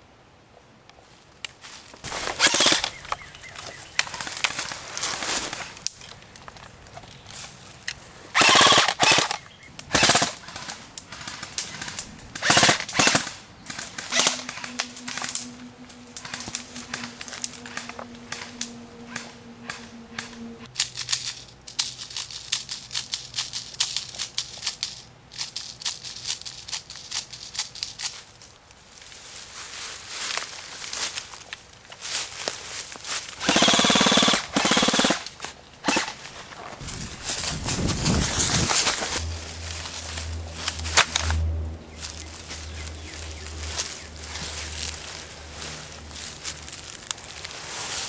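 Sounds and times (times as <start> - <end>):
airsoft guns firing: 2.1 - 3.0, 8.4 - 15.2, 33.4 - 36.2.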